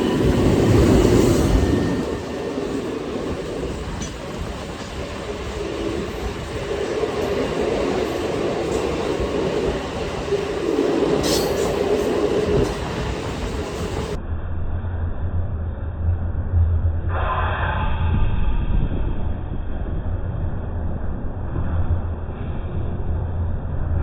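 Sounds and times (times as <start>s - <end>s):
train wheels rumbling on rails: 0.0s - 14.2s.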